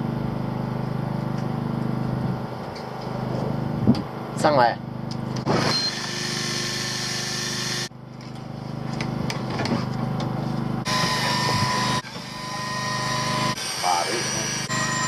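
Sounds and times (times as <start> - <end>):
motor humming: 5.1 - 7.9, 8.9 - 15.0.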